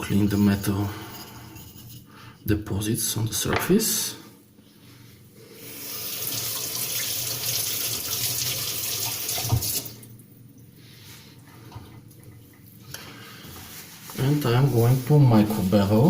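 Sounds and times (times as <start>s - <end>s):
water running from tap: 5.7s - 10.2s.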